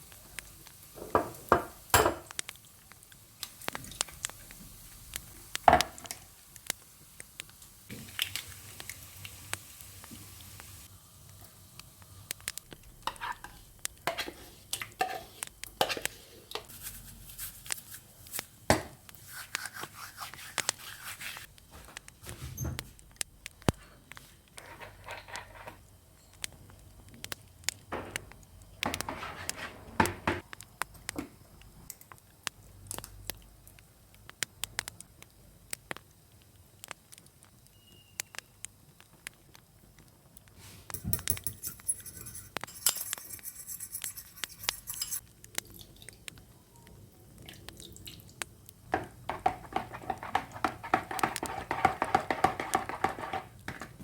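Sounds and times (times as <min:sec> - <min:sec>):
utensils and dishes clinking: 0:40.9 - 0:45.2.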